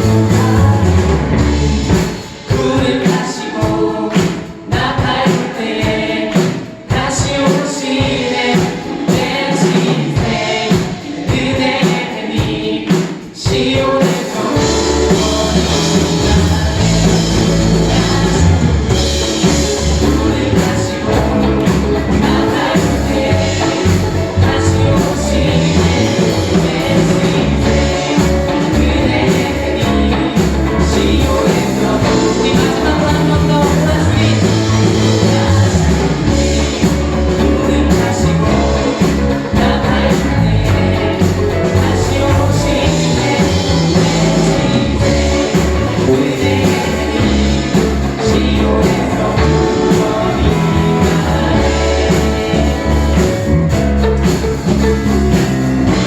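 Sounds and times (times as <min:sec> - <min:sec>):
heavy bass: 0:00.0 - 0:02.8, 0:14.5 - 0:56.0
worship band and singers: 0:00.0 - 0:56.0.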